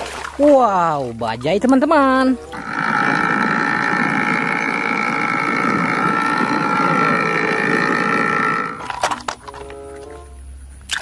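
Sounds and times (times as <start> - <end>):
held high tone: 2.4 - 10.3
auto-rickshaw engine running: 2.6 - 9.9.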